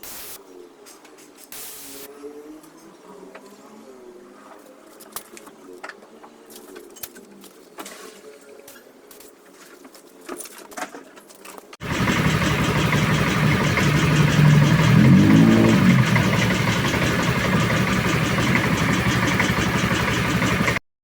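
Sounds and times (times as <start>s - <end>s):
motorcycle engine idling: 11.8s - 20.8s.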